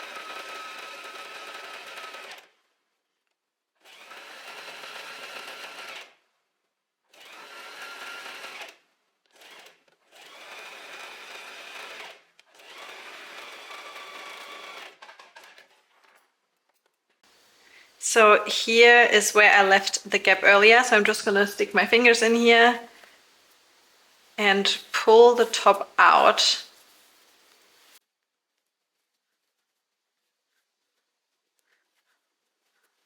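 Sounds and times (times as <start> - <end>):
electric sewing machine stitching: 0.0 - 2.6, 3.8 - 6.2, 7.1 - 15.8
fabric rustling: 22.2 - 28.0.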